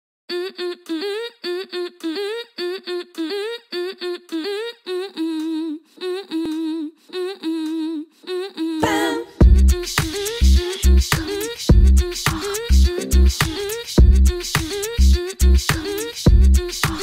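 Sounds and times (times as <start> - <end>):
person humming a melody: 0.3 - 17.0.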